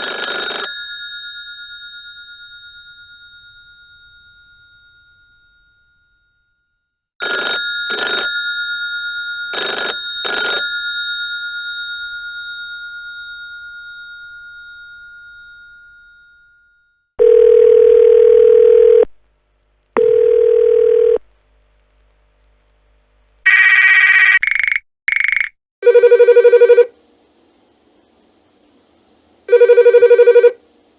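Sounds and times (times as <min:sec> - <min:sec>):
telephone bell ringing: 0:00.0 - 0:05.2, 0:07.2 - 0:15.5, 0:17.2 - 0:19.1, 0:20.0 - 0:21.2, 0:25.8 - 0:26.9, 0:29.5 - 0:30.6.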